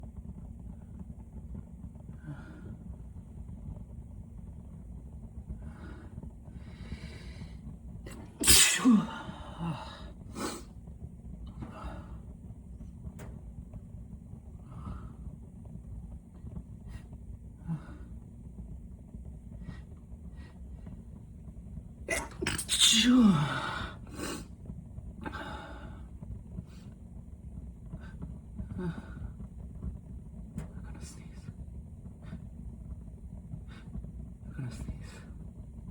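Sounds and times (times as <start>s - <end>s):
steady low rumble: 0.0s - 35.9s
man sneezing: 8.2s - 10.6s, 22.1s - 24.4s
man sniffing through stuffy nose: 10.3s - 10.7s
breathy exhales: 11.5s - 12.2s, 16.9s - 18.2s.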